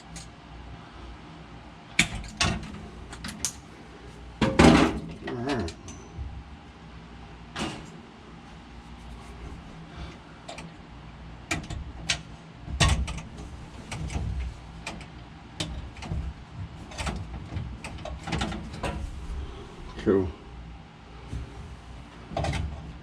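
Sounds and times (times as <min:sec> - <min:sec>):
sharp clicks and knocks: 0:11.5 - 0:19.0.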